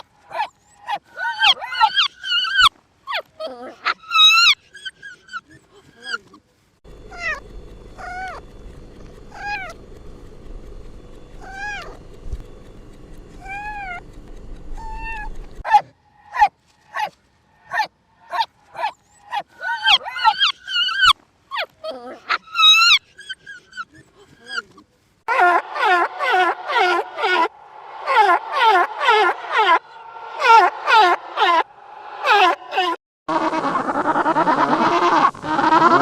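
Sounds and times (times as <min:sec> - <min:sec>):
low background hum: 0:00.0 - 0:32.1
cat meowing: 0:14.8 - 0:15.4.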